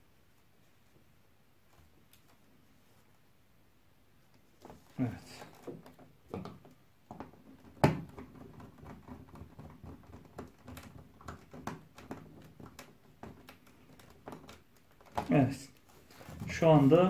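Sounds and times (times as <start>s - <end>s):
small clicks and taps: 5.6s - 15.9s.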